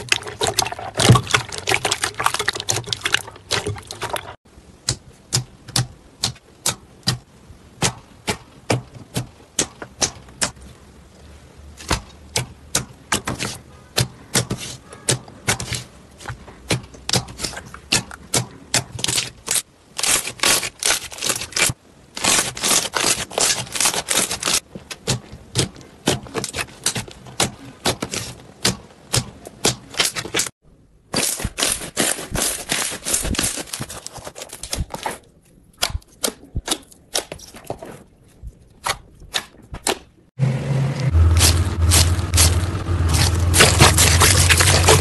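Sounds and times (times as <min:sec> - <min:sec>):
low hum: 0:40.4 - 0:45.0
crunchy slime crackling: 0:41.1 - 0:45.0.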